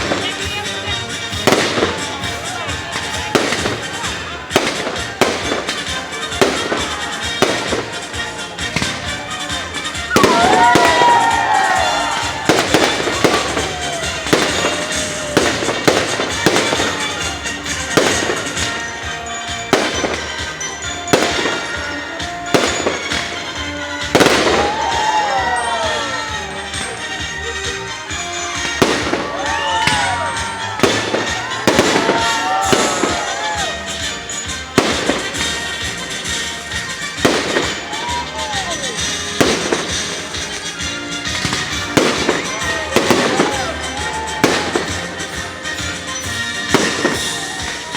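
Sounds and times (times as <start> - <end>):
fireworks shells bursting: 0.0 - 47.9
firework whistles gliding in pitch: 10.0 - 17.2, 28.1 - 34.8, 46.1 - 47.9.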